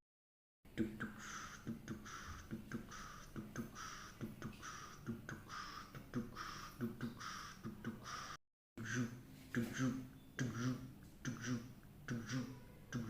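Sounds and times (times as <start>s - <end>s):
heartbeat lub-dub: 0.8s - 8.1s.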